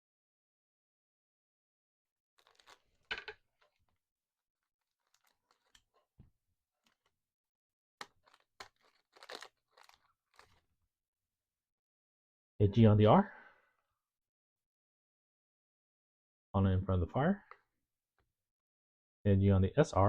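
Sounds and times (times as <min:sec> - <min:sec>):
card pack crinkling and rustling: 0:02.4 - 0:04.0, 0:04.8 - 0:07.2, 0:08.0 - 0:10.7.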